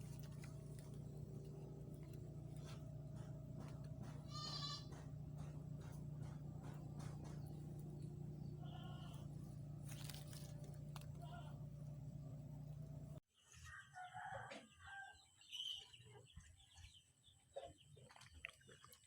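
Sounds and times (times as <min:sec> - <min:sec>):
steady low hum: 0:00.0 - 0:13.2.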